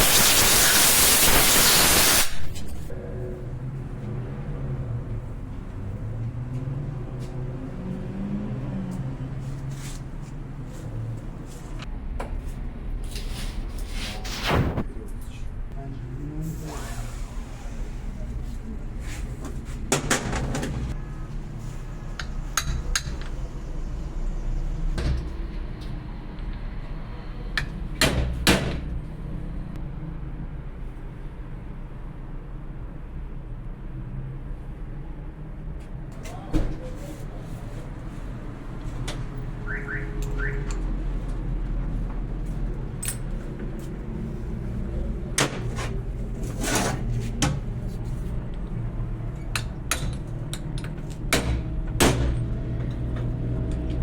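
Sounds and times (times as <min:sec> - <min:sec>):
sharp metal knocks and clanks: 0:49.6 - 0:52.5.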